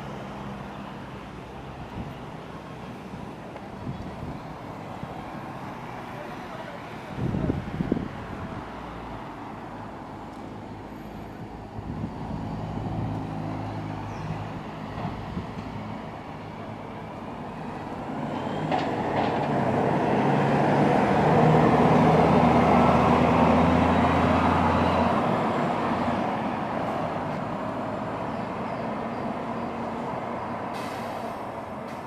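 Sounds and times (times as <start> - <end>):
bus diesel engine pulling away: 0.0 - 32.0.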